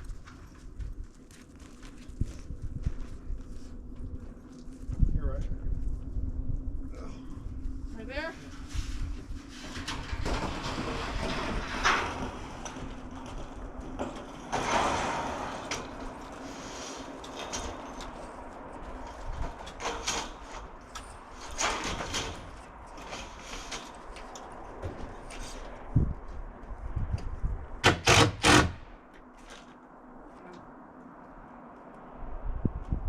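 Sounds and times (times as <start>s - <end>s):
steady low hum: 0.0s - 21.7s
metal roofing panels scraping: 8.4s - 18.4s, 19.0s - 25.7s.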